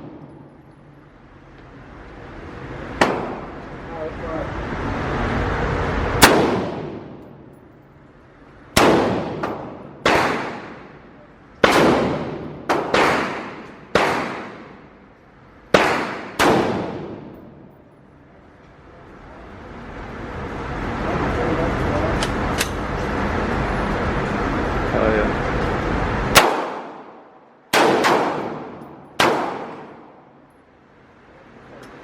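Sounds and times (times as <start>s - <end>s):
gunshots with ringing echo: 6.2s - 7.2s, 8.8s - 11.0s, 11.6s - 14.8s, 15.7s - 17.6s, 26.4s - 30.2s.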